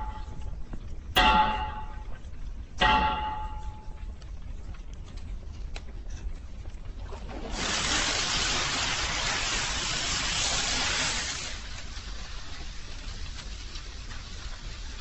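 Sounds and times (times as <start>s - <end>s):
low steady rumble: 0.0s - 15.0s
hot steel hissing in water: 7.4s - 15.0s.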